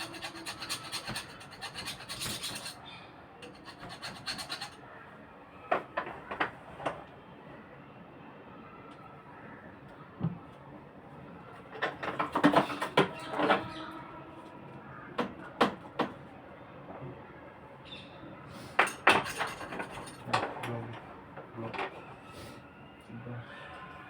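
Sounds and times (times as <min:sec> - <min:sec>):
metal tools clinking and knocking: 0:18.8 - 0:21.0.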